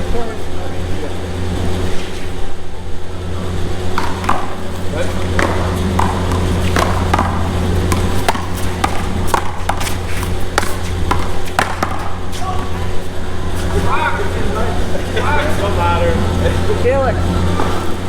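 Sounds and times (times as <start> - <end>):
distant voices: 0.0 - 18.0
low hum: 0.0 - 18.0.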